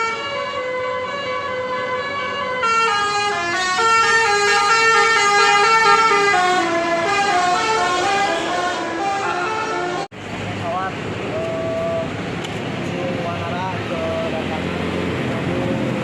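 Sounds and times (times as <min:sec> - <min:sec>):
musical bus horn playing tune: 0:00.0 - 0:10.1.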